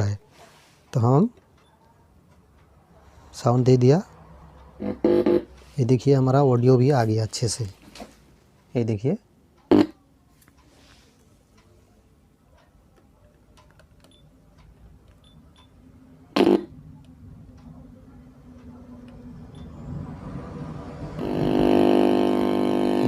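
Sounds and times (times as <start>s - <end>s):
buzzing from speaker: 4.8s - 5.5s, 16.4s - 16.8s, 21.2s - 23.0s.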